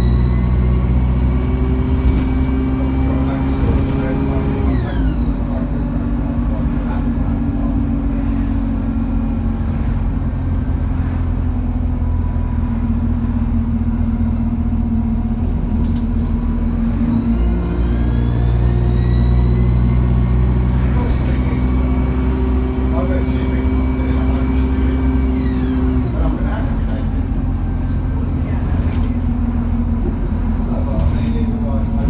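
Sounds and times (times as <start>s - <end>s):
turbocharger whine rising: 0.0s - 5.9s, 15.9s - 26.5s
bus diesel engine running: 0.0s - 32.0s.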